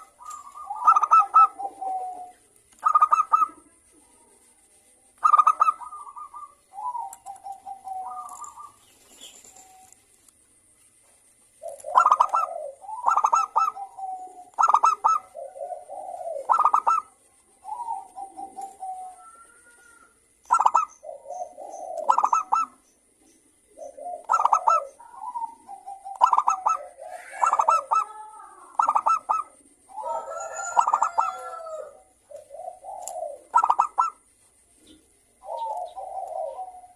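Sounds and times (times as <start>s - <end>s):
dove cooing song: 0.0s - 10.1s, 11.5s - 36.9s.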